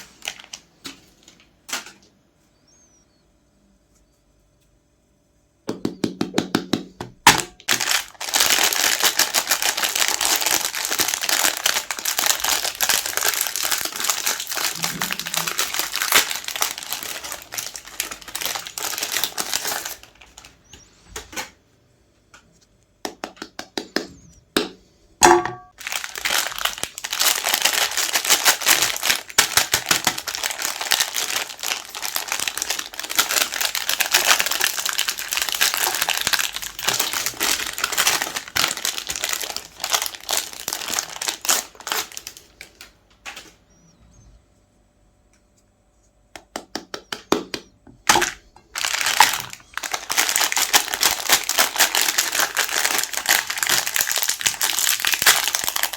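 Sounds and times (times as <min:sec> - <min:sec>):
meat grinder crunching ice cream bars: 0:25.8 - 0:42.4, 0:48.1 - 0:55.9.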